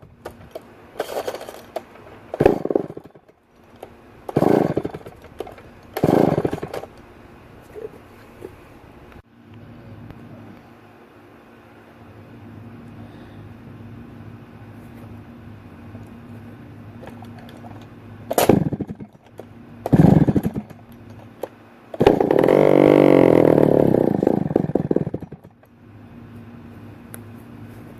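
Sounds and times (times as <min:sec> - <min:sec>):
chainsaw engine pull-started: 0:00.3 - 0:06.9, 0:17.0 - 0:21.2, 0:22.0 - 0:25.6.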